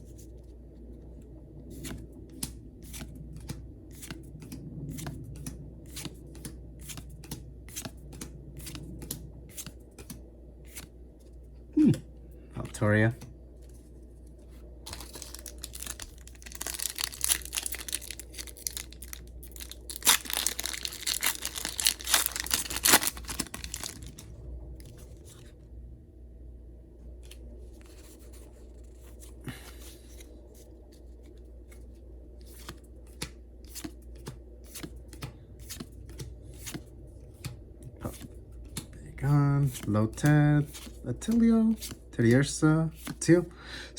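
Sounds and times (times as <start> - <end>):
cards being handled: 0.0 - 24.2, 27.1 - 43.5
foil wrapper tearing and crinkling: 14.9 - 24.2.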